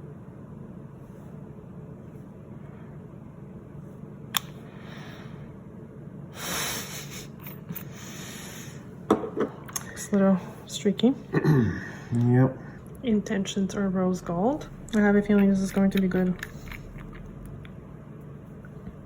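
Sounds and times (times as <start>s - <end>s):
low background hum: 0.0s - 19.0s
sharp click: 4.3s - 4.6s.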